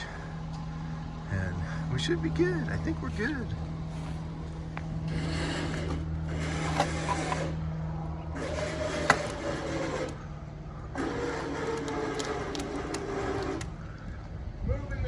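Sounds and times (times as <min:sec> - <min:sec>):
truck engine humming: 0:00.0 - 0:14.6
winch motor whirring: 0:03.1 - 0:14.0.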